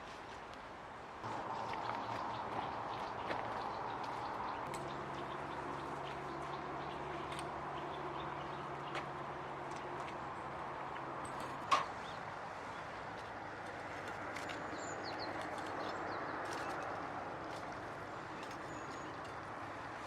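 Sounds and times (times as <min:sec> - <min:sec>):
small birds chirping: 0:01.5 - 0:09.2, 0:14.4 - 0:17.0, 0:17.6 - 0:20.0.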